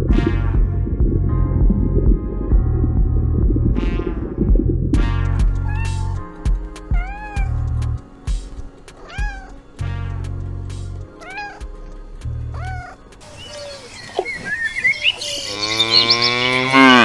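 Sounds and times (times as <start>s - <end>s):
low musical tone: 0.0s - 14.0s
kitten mewing: 5.6s - 8.0s, 8.9s - 9.7s, 11.1s - 13.9s
animal rising call: 12.6s - 17.0s.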